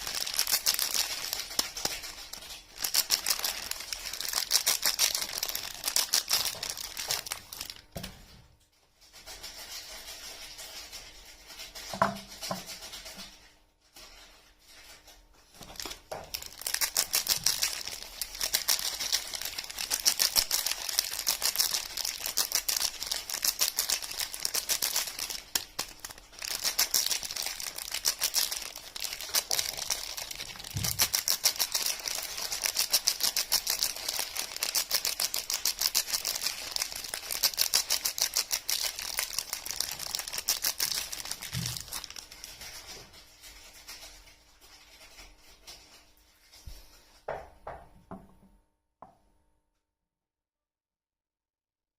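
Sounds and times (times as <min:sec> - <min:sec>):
packaging crinkling: 0:00.0 - 0:08.3, 0:14.0 - 0:46.5.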